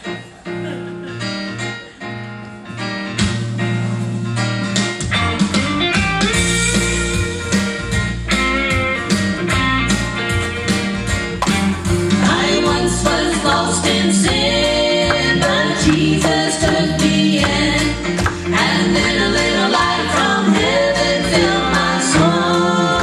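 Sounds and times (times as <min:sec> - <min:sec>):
gospel music with guitar: 0:00.0 - 0:23.0
deep bass line: 0:05.0 - 0:23.0.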